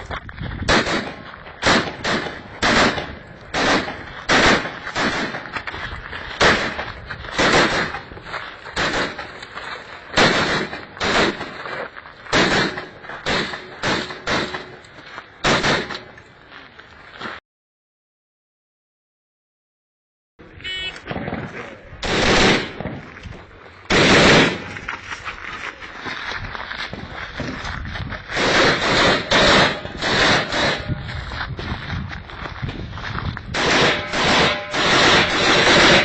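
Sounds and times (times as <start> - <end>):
rifle shots with echo: 0.7 - 5.6, 6.4 - 8.1, 8.8 - 9.4, 10.1 - 11.6, 12.3 - 14.8, 15.4 - 16.2, 21.0 - 23.1, 23.9 - 24.8, 28.3 - 31.0, 33.5 - 36.0.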